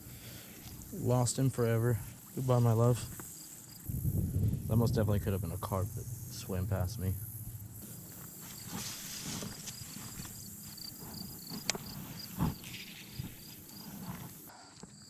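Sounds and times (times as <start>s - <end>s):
high-pitched insect chirping: 2.0s - 8.8s, 9.4s - 13.8s
low rustling: 3.9s - 14.4s.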